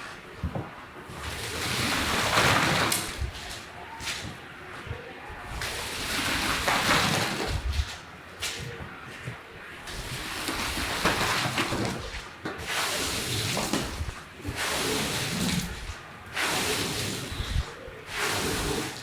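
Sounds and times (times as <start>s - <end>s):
water rushing on wet carpet: 1.1s - 4.2s, 5.6s - 7.9s, 9.9s - 19.0s.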